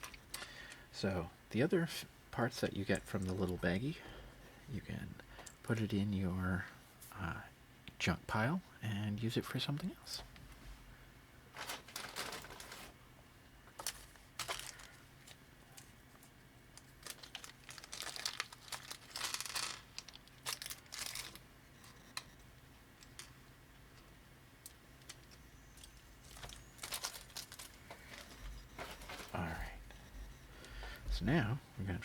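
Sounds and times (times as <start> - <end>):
plastic bag crinkling: 11.5 - 13.0, 13.7 - 21.5, 25.0 - 29.4.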